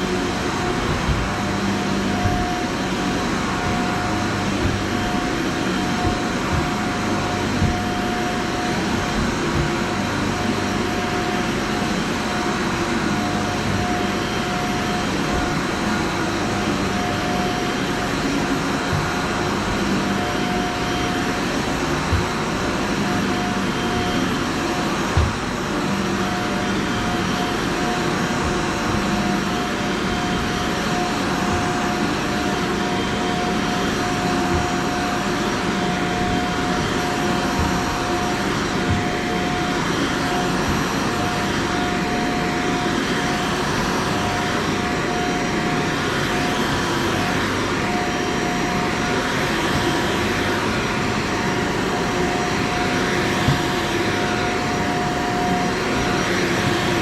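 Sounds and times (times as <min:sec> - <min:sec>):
vacuum cleaner whine: 0:00.0 - 0:57.0.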